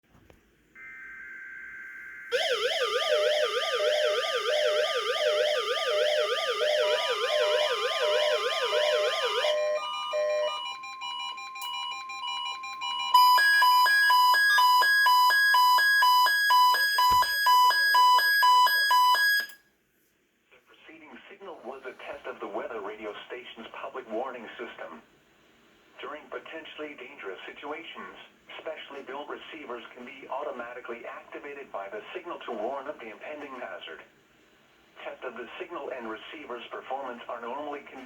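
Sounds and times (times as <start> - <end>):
warbling siren alarms: 0.8 - 19.6.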